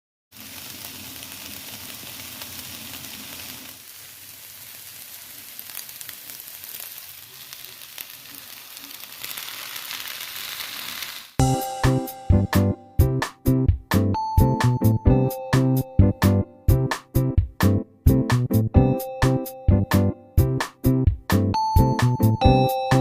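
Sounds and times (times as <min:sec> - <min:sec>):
food sizzling in a pan: 0:00.3 - 0:11.4.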